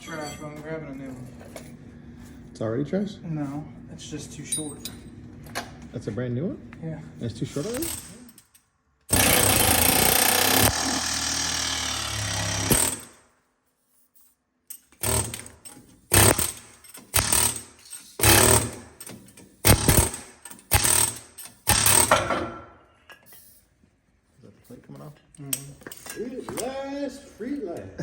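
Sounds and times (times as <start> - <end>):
pneumatic air hammer: 9.1 - 13.2, 14.8 - 22.5.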